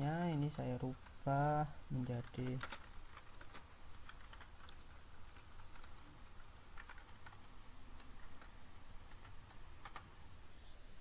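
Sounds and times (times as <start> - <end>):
low steady hum: 0.0 - 11.0
keyboard keystrokes: 6.8 - 10.1.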